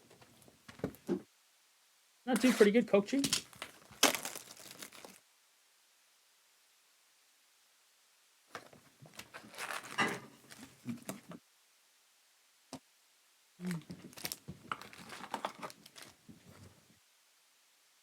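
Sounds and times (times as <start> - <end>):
card packaging rustling: 2.4 - 5.2, 9.1 - 11.2, 13.9 - 16.3.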